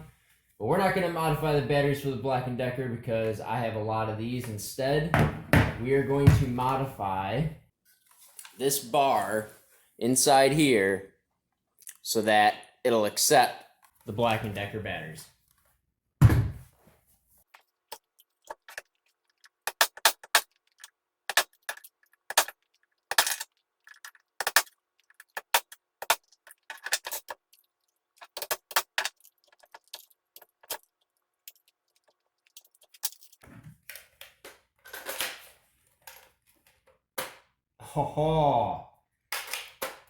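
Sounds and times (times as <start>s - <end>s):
dull knocks: 5.1s - 6.6s
plastic and metal parts clicking: 19.7s - 27.6s.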